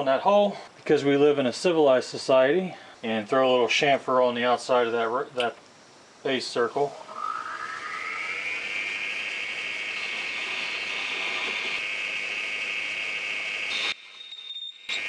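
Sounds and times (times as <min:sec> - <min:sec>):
lathe spindle whining: 0:07.0 - 0:15.0.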